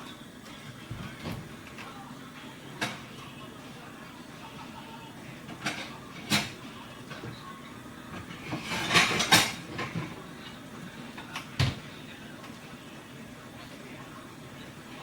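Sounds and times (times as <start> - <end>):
kitchenware rattling clatter: 8.2 - 10.2.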